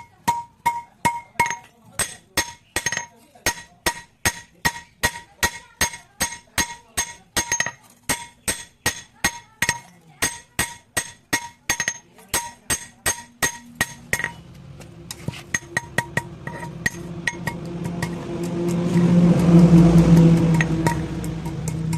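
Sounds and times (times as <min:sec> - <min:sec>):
hammer striking metal on anvil: 0:00.0 - 0:14.4, 0:15.1 - 0:21.9
low hum: 0:13.2 - 0:21.9.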